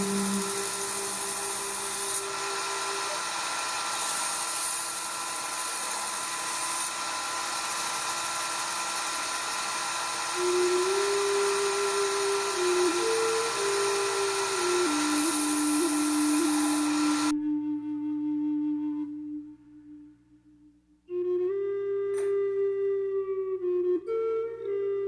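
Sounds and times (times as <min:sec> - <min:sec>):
grinding hiss: 0:00.0 - 0:17.3
power tool whining: 0:00.0 - 0:17.4.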